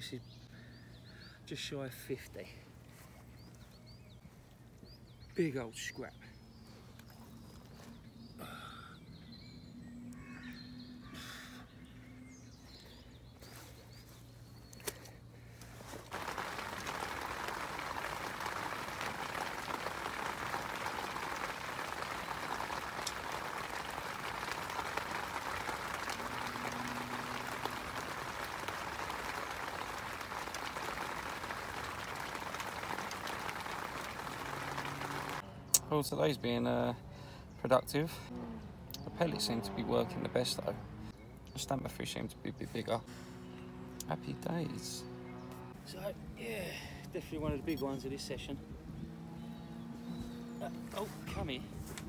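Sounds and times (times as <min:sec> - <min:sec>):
faint bird calls: 0:00.0 - 0:16.5.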